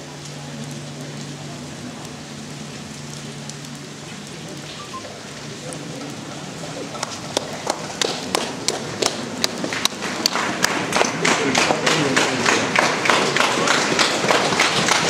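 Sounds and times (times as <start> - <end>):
crowd voices: 0.0 - 15.0
hand claps and applause: 6.9 - 15.0.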